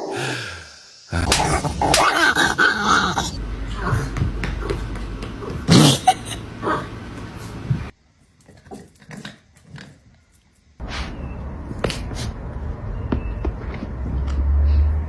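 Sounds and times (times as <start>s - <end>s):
dog vocalizing: 1.1s - 4.8s.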